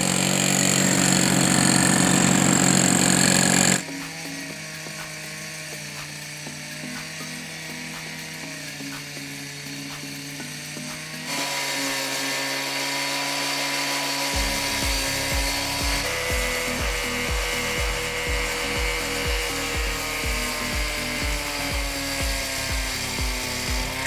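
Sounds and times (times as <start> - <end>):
sustained music tones: 0.8 - 24.0
kick drum beat: 14.4 - 24.0.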